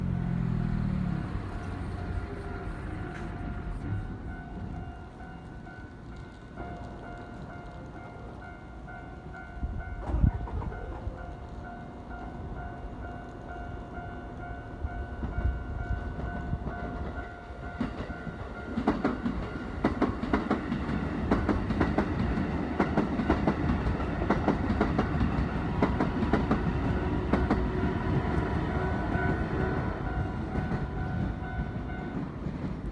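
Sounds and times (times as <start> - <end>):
heavy train rumble: 0.0 - 32.9
level-crossing warning bell: 1.1 - 32.9
train wheels clattering: 15.3 - 32.9.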